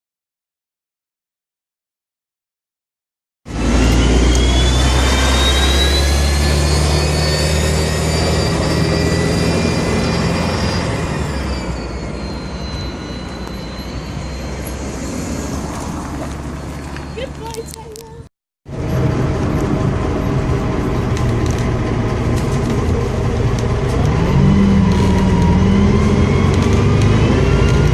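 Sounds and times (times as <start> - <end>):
bus diesel engine pulling away: 3.5 - 17.7, 18.7 - 27.9
turbo whistle: 3.7 - 14.8.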